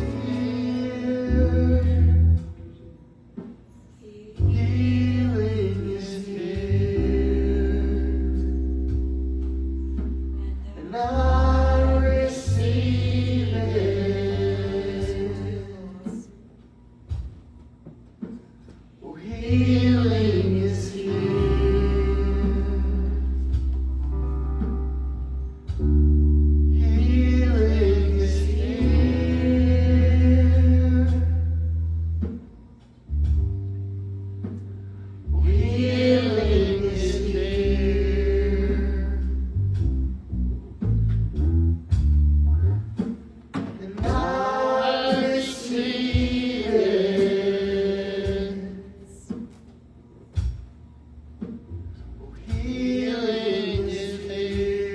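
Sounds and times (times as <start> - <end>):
sustained chords: 0.0 - 2.7
deep bass: 0.0 - 3.1, 4.4 - 16.2, 19.2 - 43.2
guitar: 0.0 - 16.3, 18.2 - 47.6
gospel singing: 0.0 - 17.3, 19.0 - 32.4, 34.6 - 39.9, 43.1 - 49.8, 52.2 - 54.9.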